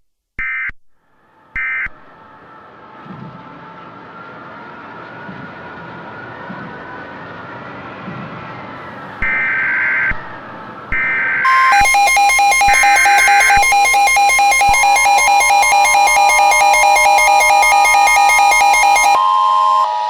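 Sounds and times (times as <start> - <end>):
pulsing electronic alarm: 9.2 - 20.0
warbling data-header tones: 11.0 - 20.0
steady attention tones: 11.2 - 20.0.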